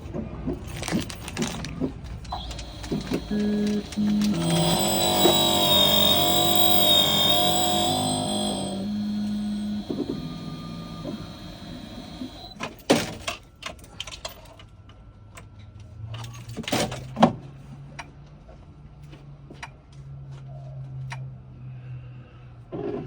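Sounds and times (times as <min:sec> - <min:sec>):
clicks: 0:02.2 - 0:12.6
small motor running: 0:02.3 - 0:12.6.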